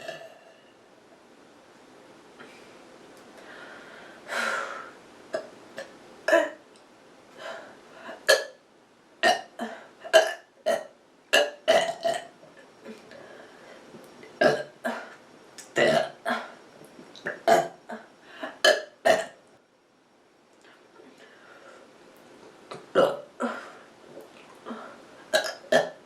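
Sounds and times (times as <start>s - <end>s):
person burping: 0.0s - 0.4s, 5.4s - 6.6s, 8.2s - 8.6s, 9.2s - 12.3s, 14.4s - 16.6s, 17.2s - 19.4s, 22.7s - 23.7s, 25.3s - 26.0s.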